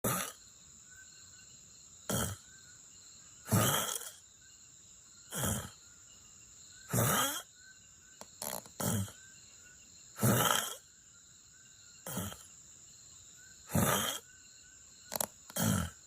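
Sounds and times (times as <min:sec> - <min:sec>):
person snoring: 0:03.5 - 0:04.1, 0:06.9 - 0:07.4, 0:12.1 - 0:12.5, 0:15.1 - 0:16.0.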